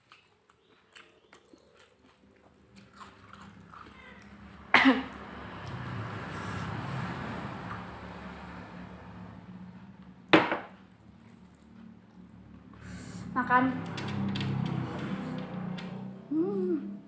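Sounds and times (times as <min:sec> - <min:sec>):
person chewing: 0:00.0 - 0:04.5.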